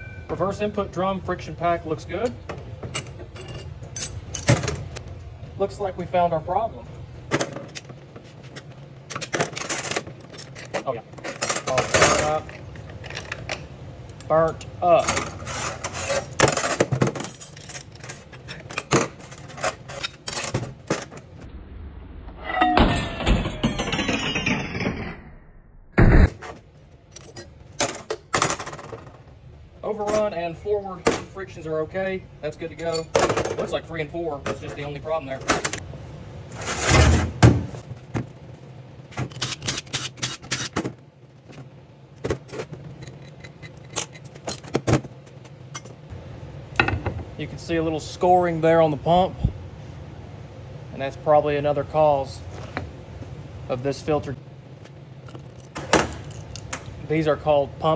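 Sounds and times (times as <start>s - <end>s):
metal parts clinking and clattering: 2.8s - 5.0s, 9.1s - 21.2s, 42.5s - 46.1s, 55.3s - 56.8s.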